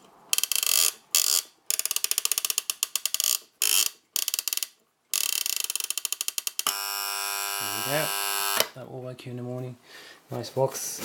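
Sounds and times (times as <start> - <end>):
alarm buzzer: 6.7 - 8.6.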